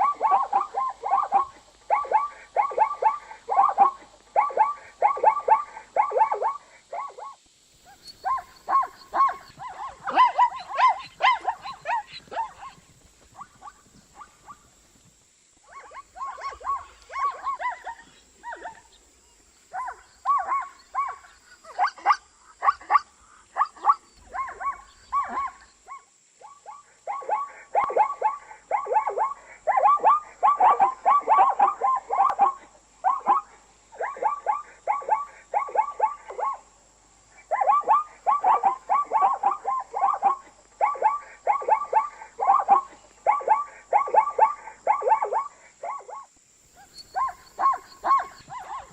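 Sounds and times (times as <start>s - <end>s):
zebras calling with yelping barks: 0.0s - 7.3s, 7.9s - 14.8s, 15.7s - 19.0s, 19.7s - 25.6s, 37.5s - 46.2s, 46.8s - 48.9s.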